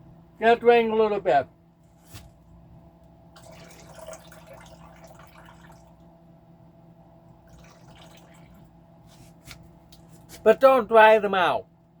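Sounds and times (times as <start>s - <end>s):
liquid trickling from a can: 3.4s - 6.0s, 7.4s - 8.6s.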